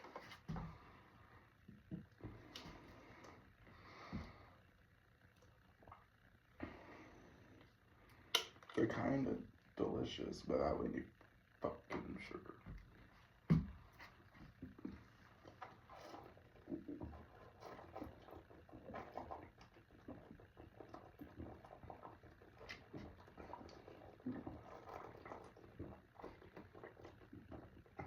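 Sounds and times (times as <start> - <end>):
person gulping and swallowing: 14.6 - 28.0.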